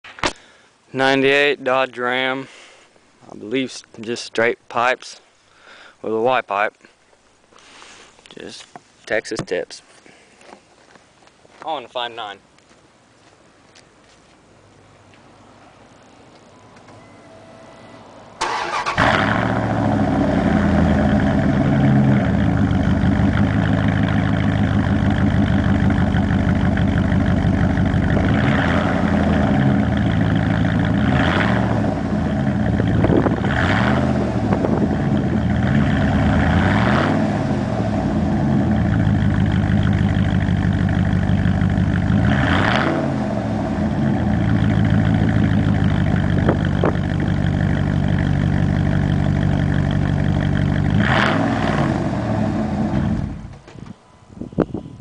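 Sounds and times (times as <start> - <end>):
truck engine starting and revving: 18.4 - 53.6.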